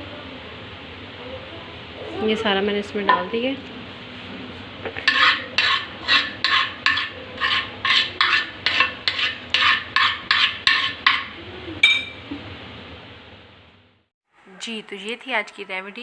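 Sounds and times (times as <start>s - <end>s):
spoon scraping a vessel: 5.0s - 11.3s.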